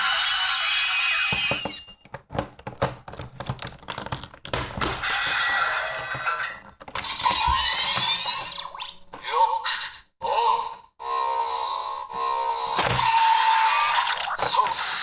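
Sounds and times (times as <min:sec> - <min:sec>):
plastic toy clicks and knocks: 0:01.3 - 0:08.8, 0:12.8 - 0:13.2, 0:14.1 - 0:15.0
toy electronic sound effects: 0:12.6 - 0:15.0.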